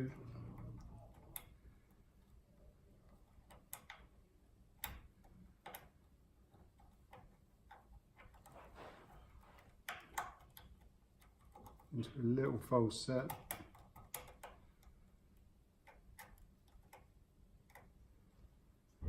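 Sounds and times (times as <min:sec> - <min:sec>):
faint clicks of lock picking: 0:00.3 - 0:02.3, 0:03.0 - 0:08.5, 0:09.6 - 0:12.0, 0:13.2 - 0:18.0.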